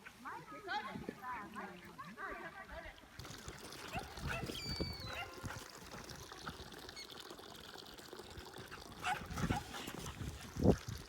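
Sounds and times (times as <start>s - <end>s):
dogs playing: 3.5s - 6.9s, 8.6s - 10.4s.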